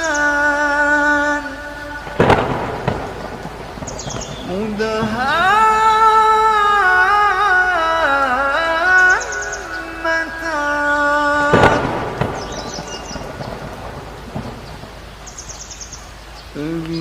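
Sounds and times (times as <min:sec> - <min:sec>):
man reciting melodically: 0:00.0 - 0:14.0, 0:16.5 - 0:17.0
sharp thunderclap: 0:02.0 - 0:05.7, 0:11.5 - 0:15.7.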